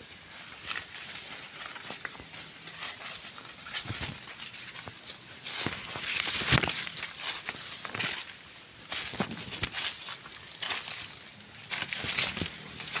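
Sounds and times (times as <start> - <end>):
dry leaves and twigs crackling: 0.0 - 13.0
footsteps through bushes: 0.0 - 13.0
rustling leaves and undergrowth: 0.0 - 13.0.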